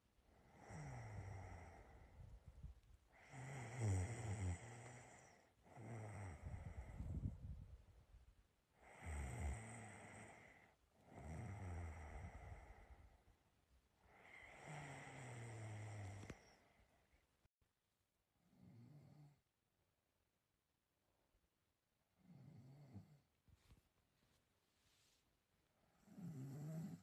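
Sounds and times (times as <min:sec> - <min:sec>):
person snoring: 0:00.4 - 0:02.1, 0:03.1 - 0:07.2, 0:08.8 - 0:13.0, 0:14.1 - 0:16.7, 0:26.0 - 0:27.0.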